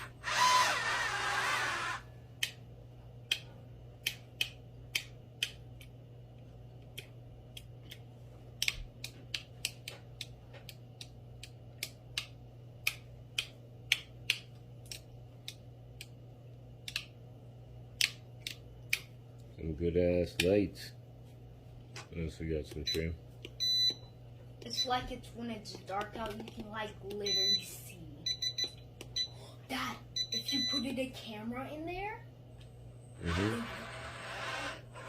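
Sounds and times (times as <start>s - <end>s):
faint electrical hum: 0.0s - 35.0s
sharp small clicks: 16.8s - 17.2s.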